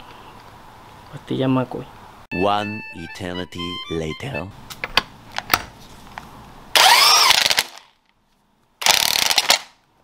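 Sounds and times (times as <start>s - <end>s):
power tool motor spinning: 6.8s - 7.9s, 8.8s - 9.6s.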